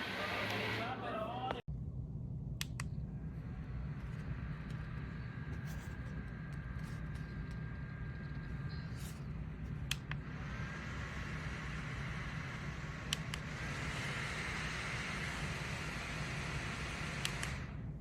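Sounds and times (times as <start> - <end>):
neck fan whirring: 0.0 - 18.0
sharp clicks: 13.0 - 13.8, 17.1 - 17.7.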